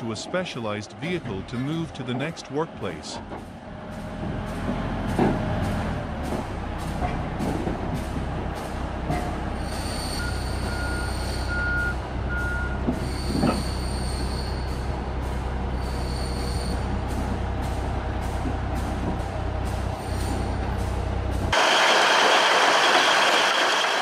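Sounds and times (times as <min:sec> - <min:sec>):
bulldozer diesel engine rumbling: 0:00.0 - 0:24.0
high squeal: 0:09.6 - 0:11.6, 0:13.0 - 0:14.8, 0:15.8 - 0:16.8
backup alarm beeping: 0:10.2 - 0:12.8.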